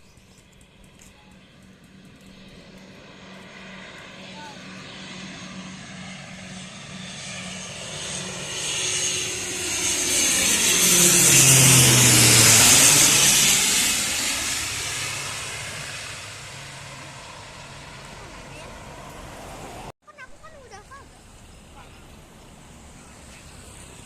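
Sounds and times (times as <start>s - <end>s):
turboprop aircraft flying past: 0.0s - 24.0s.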